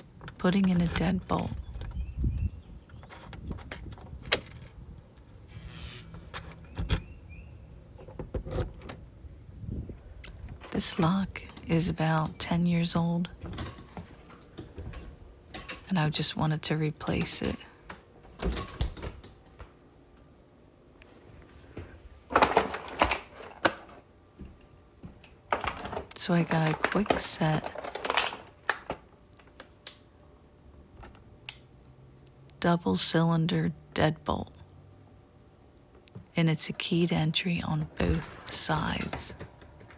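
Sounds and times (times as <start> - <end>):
deadbolt clicking and rattling: 17.1 - 19.7
door lock clicks and knocks: 18.4 - 19.5.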